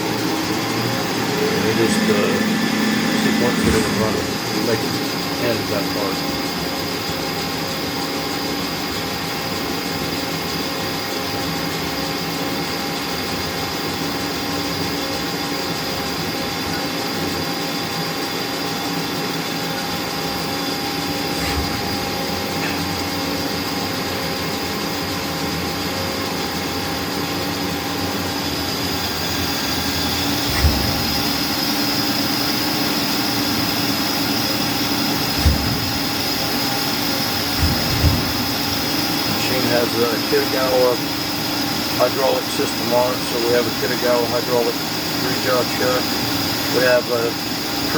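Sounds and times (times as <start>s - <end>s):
lathe machine whine: 0.0s - 47.9s
sharp machine clunks: 0.1s - 5.4s, 29.7s - 32.0s, 35.0s - 39.6s.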